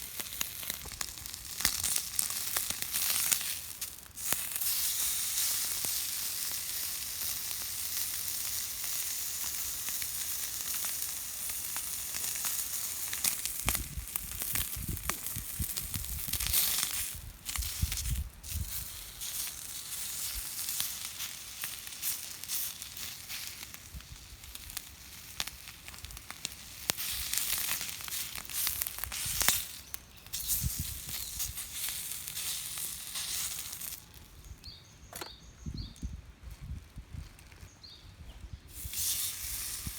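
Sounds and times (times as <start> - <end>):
food sizzling on a griddle: 0.0 - 34.2, 38.7 - 39.9
sharp click: 35.1 - 35.4.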